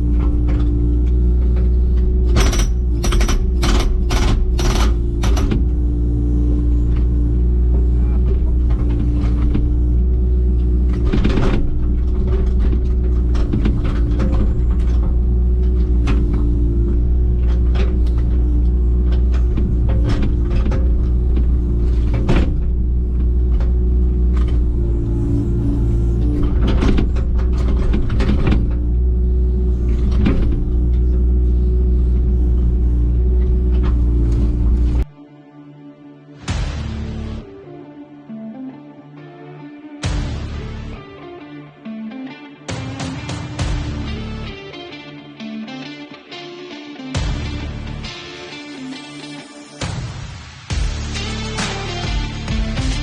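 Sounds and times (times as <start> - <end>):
metal clanks and knocks: 0.0 - 5.9, 10.8 - 31.5
diesel engine running: 0.0 - 35.1, 40.0 - 41.0, 43.6 - 44.6, 47.2 - 48.3, 50.7 - 53.0.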